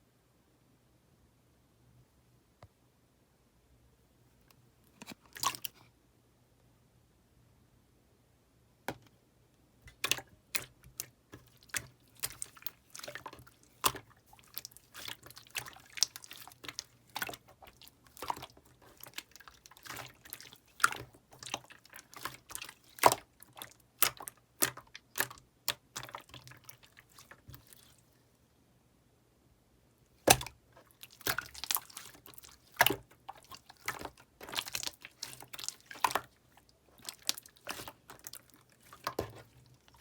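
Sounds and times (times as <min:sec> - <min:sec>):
slime squished by hand: 0:09.9 - 0:28.1, 0:30.2 - 0:40.0.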